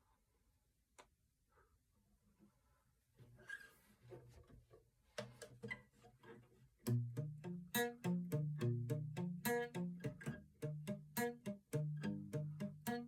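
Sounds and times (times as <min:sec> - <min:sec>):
palm-muted guitar chords: 0:06.8 - 0:13.0
quiet picked guitar notes: 0:06.8 - 0:13.0.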